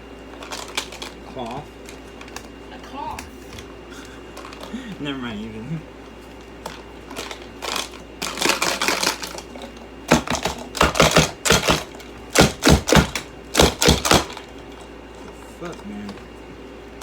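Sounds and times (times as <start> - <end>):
plastic parts clicking and clattering: 0.4 - 1.2, 6.6 - 12.1.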